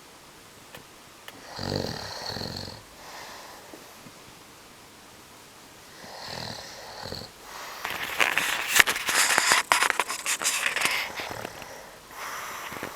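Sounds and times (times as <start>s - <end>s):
person snoring: 1.3s - 3.7s, 5.9s - 8.0s, 10.8s - 12.9s
soft breath: 1.3s - 4.2s, 5.8s - 12.9s.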